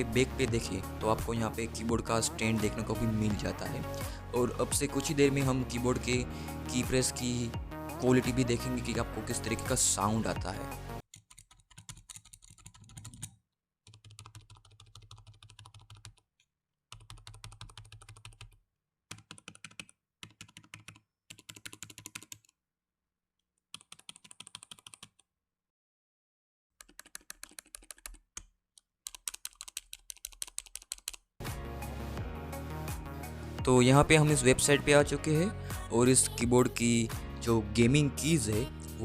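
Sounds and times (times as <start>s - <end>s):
keyboard typing: 11.1s - 13.3s, 13.9s - 16.2s, 16.9s - 22.5s, 23.8s - 25.2s, 26.8s - 31.2s.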